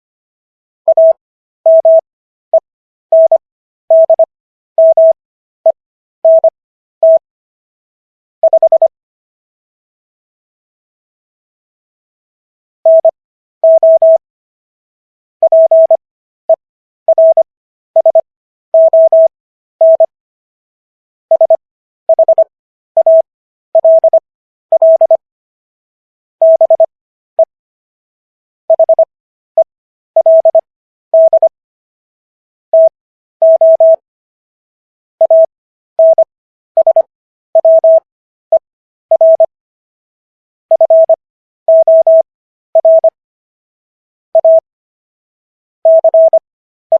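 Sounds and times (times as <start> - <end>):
morse code beeps: 0.9 - 2.0, 3.1 - 5.2, 6.2 - 7.2, 8.4 - 8.9, 12.9 - 14.2, 15.4 - 16.0, 17.1 - 20.1, 21.3 - 25.2, 26.4 - 27.5, 28.7 - 29.1, 30.2 - 30.6, 31.2 - 31.5, 32.7 - 34.0, 35.2 - 39.5, 40.7 - 43.2, 44.4 - 44.7, 45.9 - 46.4.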